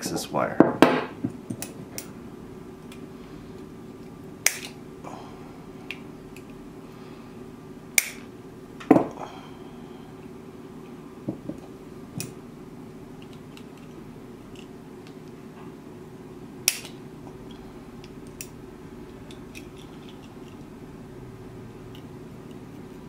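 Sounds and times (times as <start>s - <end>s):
steady low hum: 0.0s - 23.0s
wire cutters clicking: 4.4s - 4.8s.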